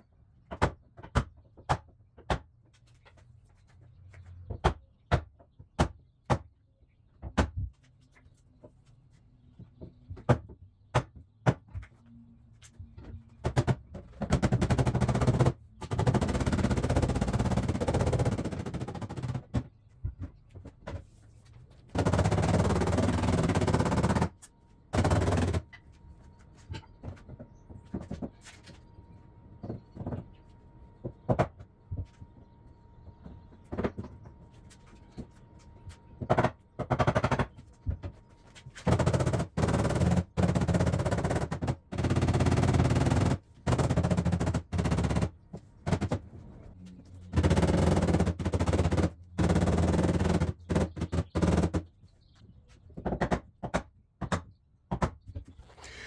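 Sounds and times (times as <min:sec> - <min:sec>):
rapid hammering on steel panel: 0:13.4 - 0:19.6, 0:21.9 - 0:25.7, 0:36.2 - 0:37.6, 0:38.8 - 0:46.2, 0:47.3 - 0:51.9.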